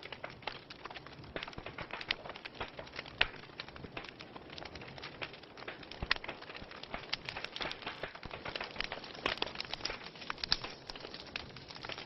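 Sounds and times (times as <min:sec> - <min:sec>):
wood fire crackling: 0:00.0 - 0:12.0.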